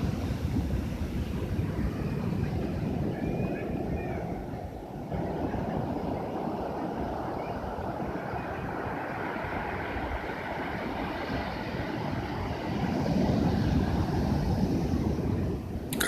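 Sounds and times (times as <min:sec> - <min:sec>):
ocean waves washing in: 0:04.6 - 0:16.0.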